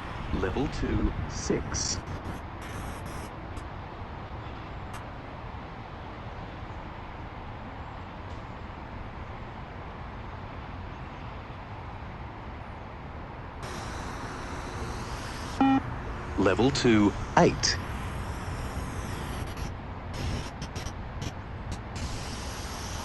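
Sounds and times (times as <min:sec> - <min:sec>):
electric skateboard rushing noise: 0:13.6 - 0:17.2, 0:17.8 - 0:23.0.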